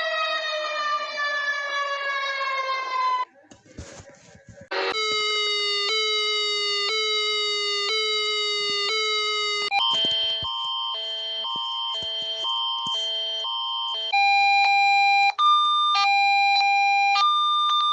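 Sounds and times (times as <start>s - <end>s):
two-tone alarm: 0.0s - 3.3s, 4.7s - 17.9s
buzzy alarm tone: 4.7s - 16.5s.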